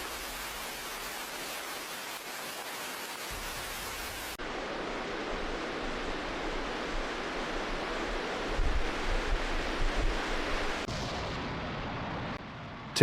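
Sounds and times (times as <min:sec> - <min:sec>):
floodwater rushing: 0:00.0 - 0:10.9
low rumbling gusts: 0:04.4 - 0:13.0.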